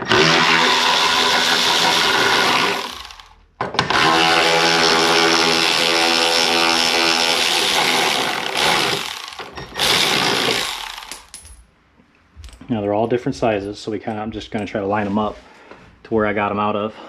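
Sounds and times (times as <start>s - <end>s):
power tool motor whining: 0.0s - 11.3s.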